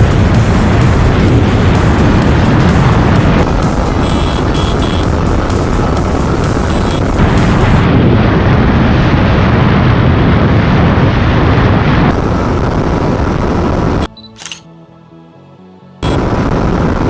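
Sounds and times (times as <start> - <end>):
motorcycle engine: 2.9 - 7.2.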